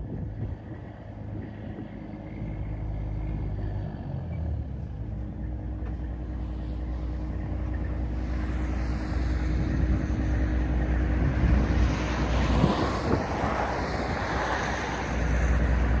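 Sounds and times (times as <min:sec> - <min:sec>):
diesel truck engine running: 0:00.0 - 0:16.0.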